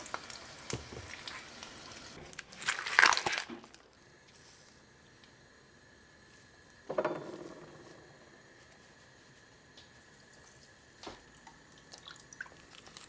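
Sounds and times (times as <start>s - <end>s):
hot oil sizzling: 0.0s - 2.3s.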